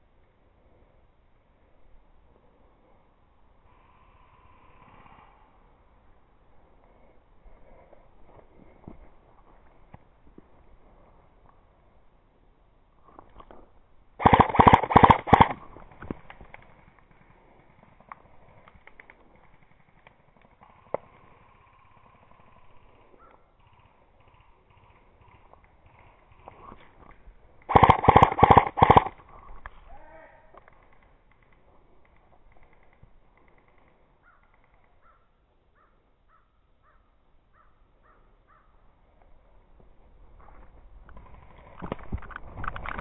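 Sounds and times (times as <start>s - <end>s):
faint airsoft gun shots: 14.2s - 15.6s, 27.7s - 29.1s
faint bird calls: 20.7s - 26.8s, 28.9s - 39.3s.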